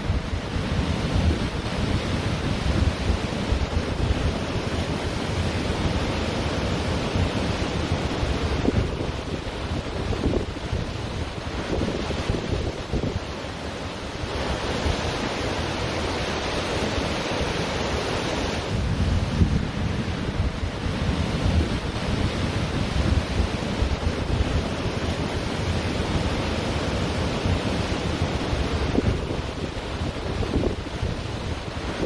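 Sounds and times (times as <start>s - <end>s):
ocean surf on a beach: 0.0s - 32.0s
wind buffeting the microphone: 0.0s - 32.0s.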